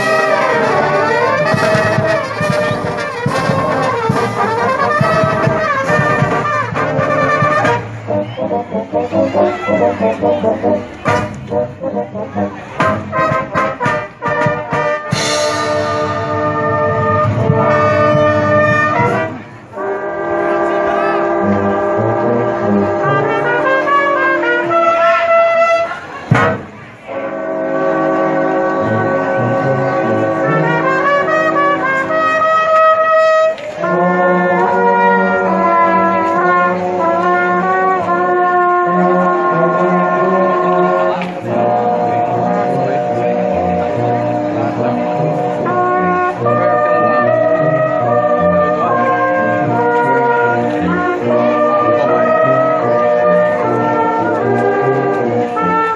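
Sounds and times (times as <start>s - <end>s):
marching band playing chords: 0.0s - 55.9s.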